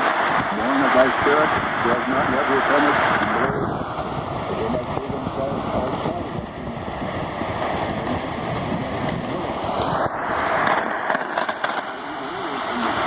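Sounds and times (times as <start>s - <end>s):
radio hiss and static: 0.0s - 13.0s
static crackles: 0.0s - 13.0s
faint radio programme: 0.3s - 13.0s.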